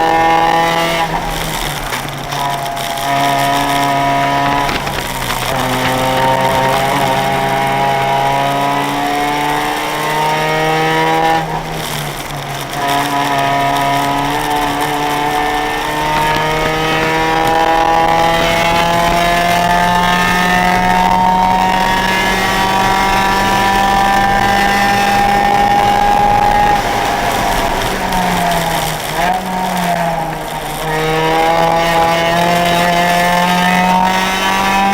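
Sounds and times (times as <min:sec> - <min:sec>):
car engine accelerating hard: 0:00.0 - 0:34.9.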